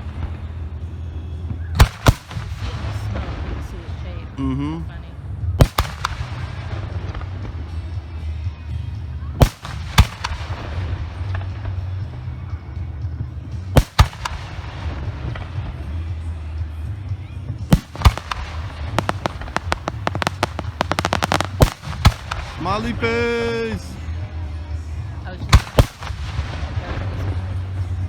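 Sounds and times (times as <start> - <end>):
firework sharp pops: 1.8 - 2.8, 5.6 - 7.2, 9.4 - 11.4, 13.8 - 15.5, 17.7 - 23.0, 25.5 - 27.0
firework shells booming: 1.8 - 3.0, 5.6 - 7.2, 13.8 - 15.4, 17.7 - 23.2, 25.6 - 27.1.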